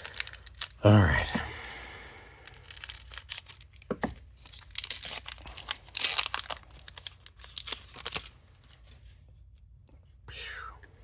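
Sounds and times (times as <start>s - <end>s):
foil wrapper tearing and crinkling: 0.0s - 0.8s, 2.5s - 8.8s.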